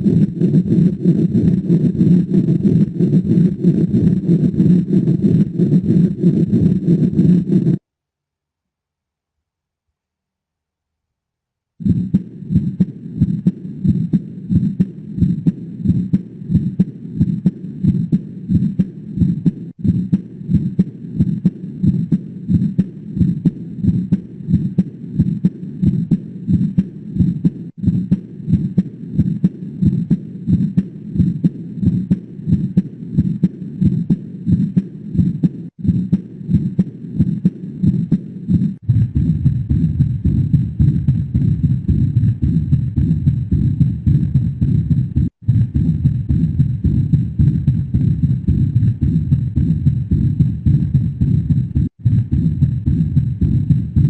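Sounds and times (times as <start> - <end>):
heartbeat thumps: 0.0 - 7.8, 11.8 - 54.0.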